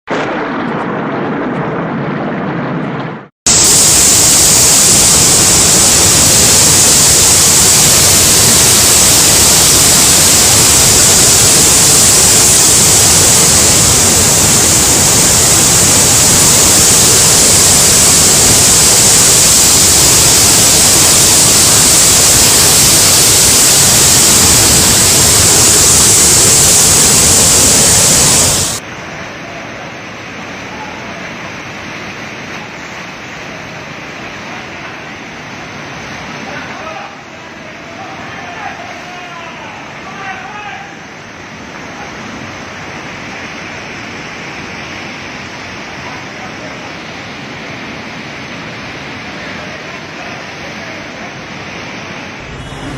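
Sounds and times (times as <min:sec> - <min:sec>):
heavy rain rushing: 0:00.1 - 0:39.1, 0:39.7 - 0:52.9
quiet dull rush: 0:52.4 - 0:52.9.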